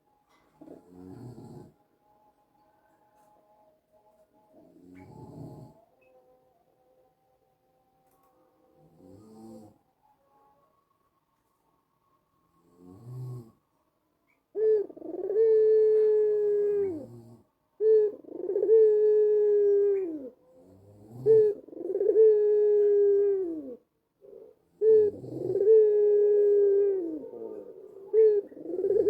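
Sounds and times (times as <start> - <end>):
dove cooing: 0.0 - 1.8, 4.5 - 6.1, 14.3 - 29.0.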